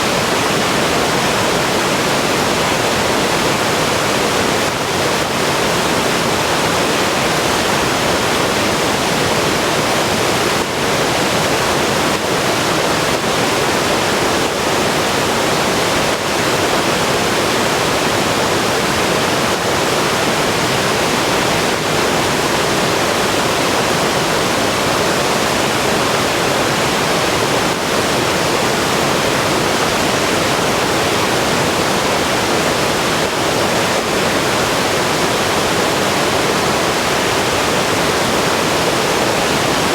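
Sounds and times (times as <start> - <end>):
river water rushing over rocks: 0.0 - 39.9.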